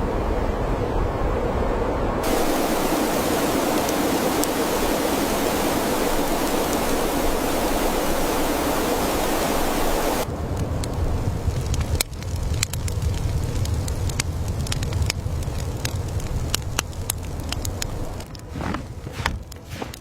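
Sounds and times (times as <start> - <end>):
loud steady rushing noise: 0.0 - 10.6
bright hiss: 2.2 - 10.3.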